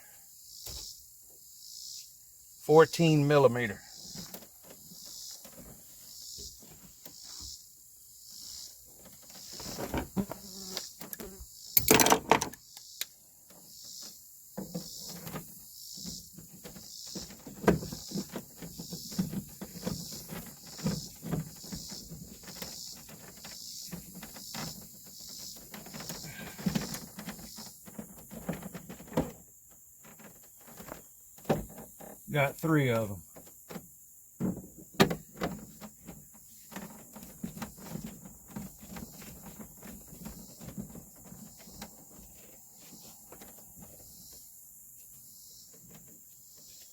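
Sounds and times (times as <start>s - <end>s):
crickets chirping: 0.0s - 46.9s
knocks and clunk: 11.0s - 12.6s, 14.5s - 44.4s.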